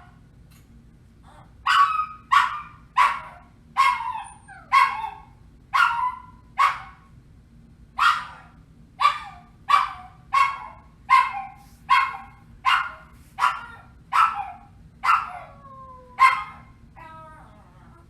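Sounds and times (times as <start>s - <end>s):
dog barking: 1.7s - 7.1s, 8.0s - 15.6s, 16.2s - 16.8s
dog whining: 3.9s - 5.2s.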